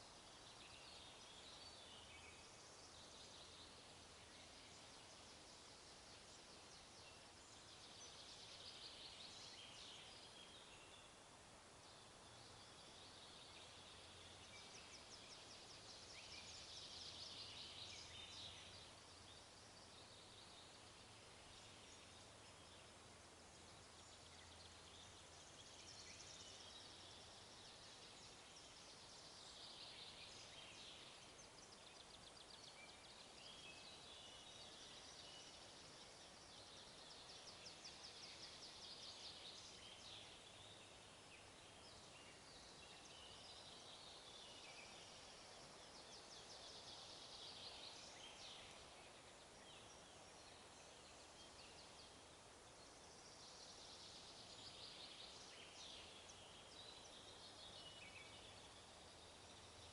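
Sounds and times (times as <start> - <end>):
small birds singing: 0.0 - 59.9
soft steady hiss: 0.0 - 59.9.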